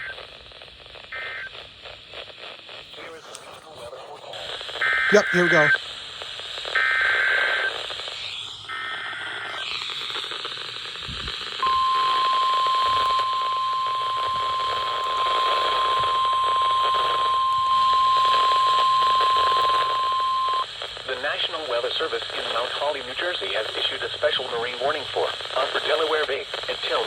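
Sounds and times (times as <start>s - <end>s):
radio hiss: 0.0s - 27.0s
steady warning alarm tone: 11.6s - 20.6s.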